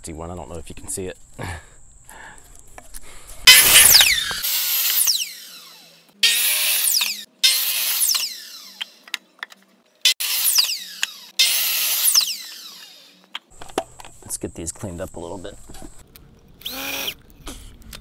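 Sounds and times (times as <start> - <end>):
handheld power tool bursts: 3.5 - 9.0, 10.1 - 13.2, 16.6 - 17.2.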